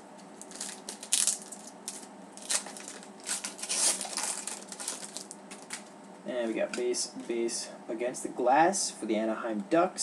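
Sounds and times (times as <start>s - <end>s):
trading cards sliding and rubbing: 2.9s - 5.0s.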